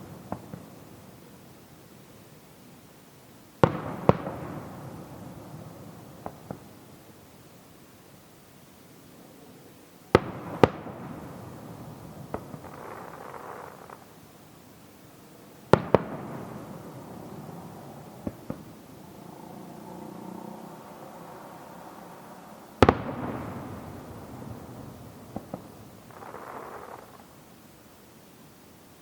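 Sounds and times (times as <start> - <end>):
small firework pops: 0.0 - 0.9, 3.6 - 4.9, 6.2 - 6.8, 10.1 - 11.2, 12.1 - 14.1, 15.7 - 16.9, 18.2 - 18.8, 22.8 - 24.7, 25.3 - 27.3
firework shells bursting: 15.7 - 19.0, 22.8 - 27.3.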